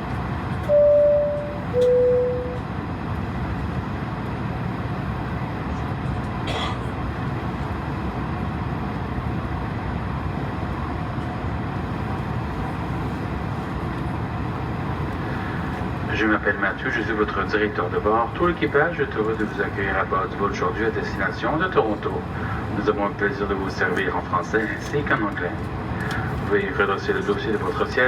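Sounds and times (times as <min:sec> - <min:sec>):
aircraft cabin hum: 0:00.0 - 0:28.0
two-tone cabin chime: 0:00.7 - 0:02.7.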